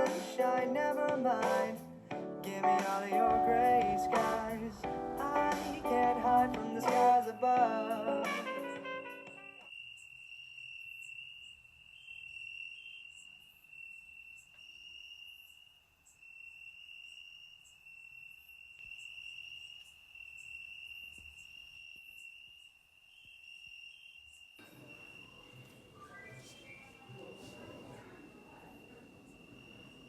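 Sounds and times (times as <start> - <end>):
crickets trilling: 9.4 - 30.0.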